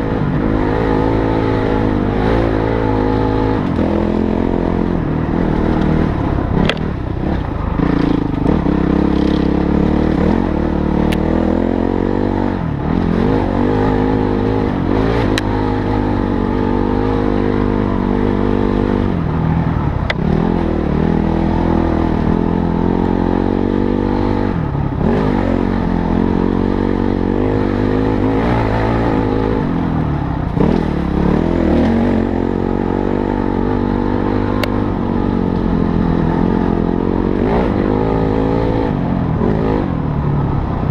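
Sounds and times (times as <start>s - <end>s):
motorcycle engine under load: 0.0s - 40.9s
sharp clicks and knocks: 6.6s - 8.6s.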